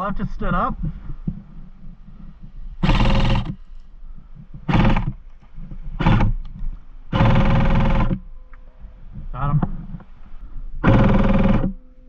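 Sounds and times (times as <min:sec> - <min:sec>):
airsoft gun full-auto bursts: 0:02.8 - 0:03.6, 0:04.6 - 0:05.2, 0:06.0 - 0:06.4, 0:07.1 - 0:08.2, 0:10.8 - 0:11.8.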